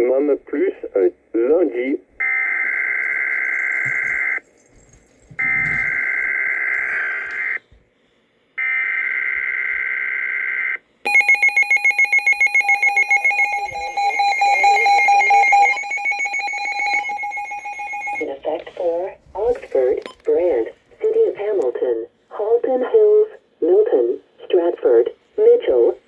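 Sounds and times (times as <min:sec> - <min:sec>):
piercing electronic alert tone: 0:11.1 - 0:18.2
screeching two-tone data bursts: 0:11.1 - 0:18.2.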